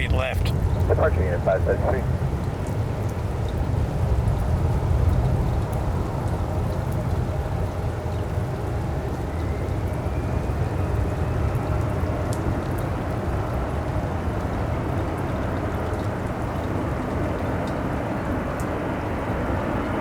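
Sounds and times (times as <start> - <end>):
faint whine: 0.0 - 2.3
heavy rain: 0.0 - 20.0.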